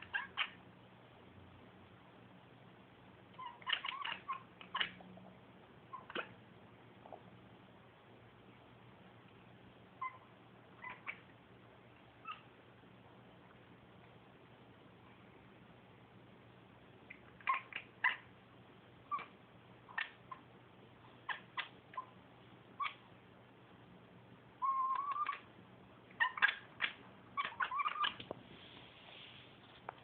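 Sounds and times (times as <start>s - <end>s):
cat chattering: 0.0s - 0.6s, 3.3s - 5.1s, 5.9s - 6.4s, 10.0s - 11.3s, 12.2s - 12.5s, 17.1s - 18.3s, 19.0s - 20.5s, 21.2s - 23.1s, 24.6s - 25.5s, 26.1s - 28.2s.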